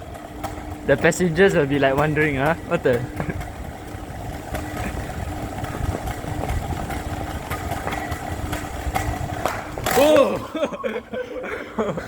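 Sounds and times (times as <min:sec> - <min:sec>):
low mechanical rumble: 0:00.0 - 0:12.0.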